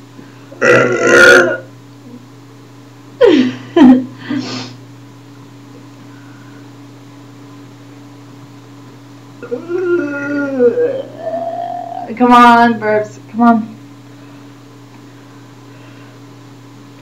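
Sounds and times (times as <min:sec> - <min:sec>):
girl burping: 0:00.6 - 0:01.7.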